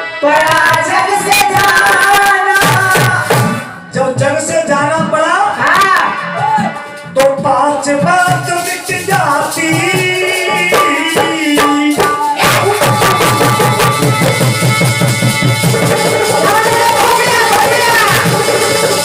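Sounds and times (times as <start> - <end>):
tabla drumming: 0.4 - 19.0
melody instrument: 8.1 - 19.0.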